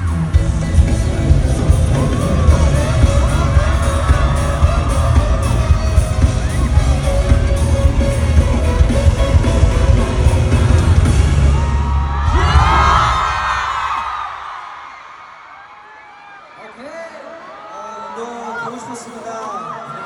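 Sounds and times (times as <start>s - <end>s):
pop song with heavy bass beat: 0.0s - 14.2s
fans yelling and cheering: 0.0s - 20.0s.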